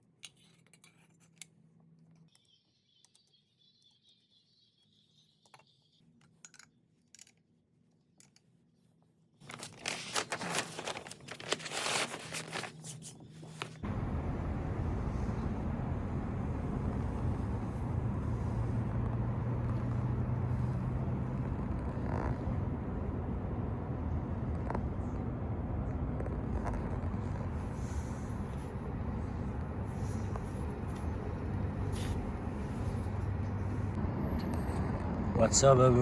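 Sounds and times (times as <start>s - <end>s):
electric motor running with hum: 13.8s - 33.9s.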